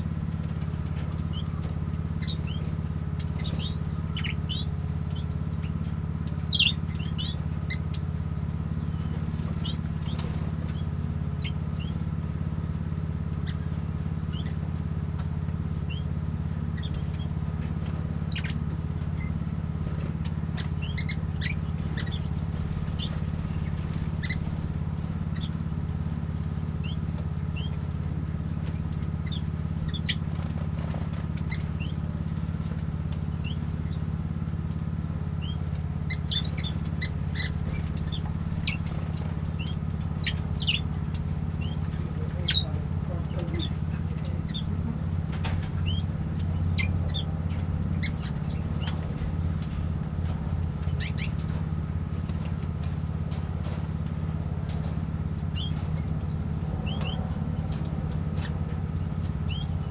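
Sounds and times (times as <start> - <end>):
small birds chirping: 0.0 - 59.9
steady low hum: 0.0 - 59.9.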